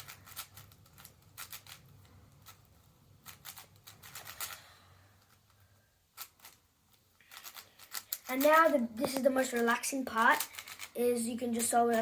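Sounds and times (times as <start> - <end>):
puzzle cube plastic clicks: 0.0 - 4.6, 6.2 - 11.0.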